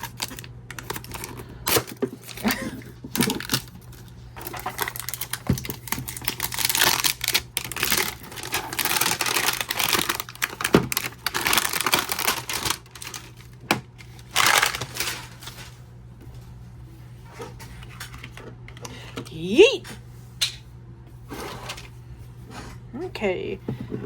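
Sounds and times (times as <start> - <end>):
plastic packaging clicks: 0.0 - 15.6
packaging rustling and tearing: 0.0 - 15.9.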